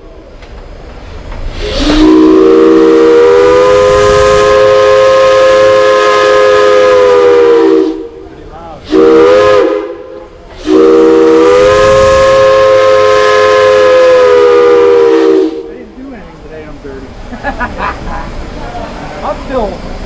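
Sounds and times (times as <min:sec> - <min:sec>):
steam hissing: 0:00.0 - 0:20.0
steam whistle chord: 0:01.6 - 0:08.1, 0:08.9 - 0:15.7.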